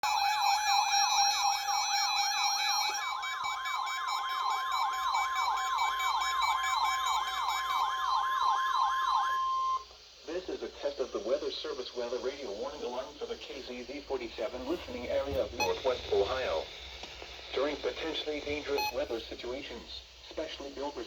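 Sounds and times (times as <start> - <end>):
fast wailing electronic siren: 0.0 - 9.8.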